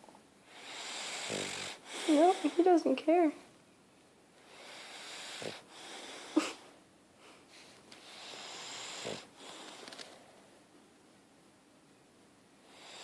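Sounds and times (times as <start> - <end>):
sharp snort: 0.5 - 2.6, 4.6 - 6.5, 8.0 - 9.8
person snoring: 0.6 - 2.6, 8.3 - 9.3.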